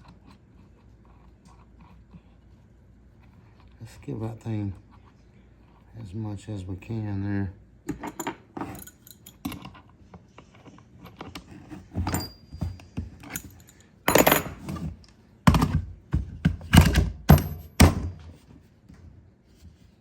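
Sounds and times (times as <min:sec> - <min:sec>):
tools and wood knocking: 0:07.9 - 0:09.8, 0:11.1 - 0:18.2
loud thunks: 0:15.5 - 0:18.2.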